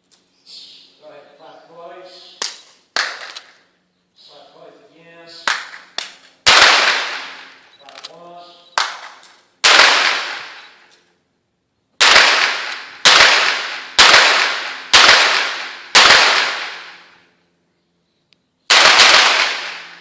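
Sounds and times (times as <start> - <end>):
pistol shots echoing: 5.4 - 7.6, 8.8 - 10.9, 12.0 - 17.2, 18.7 - 20.0.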